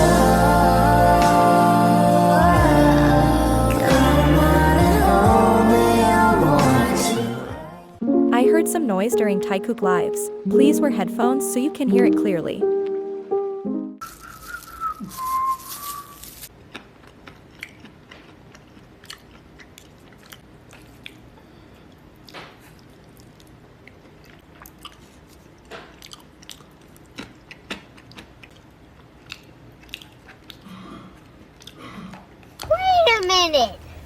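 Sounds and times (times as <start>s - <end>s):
short whistle-like tone: 14.0s - 16.4s
chewing clicks and crunches: 16.6s - 32.7s.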